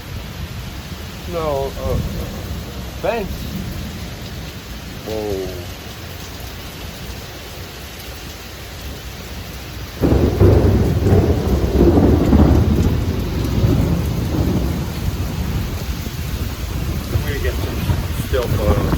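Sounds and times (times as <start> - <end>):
thunderclap rumbling: 0.0 - 5.7, 10.0 - 18.9
rain falling: 0.0 - 18.9.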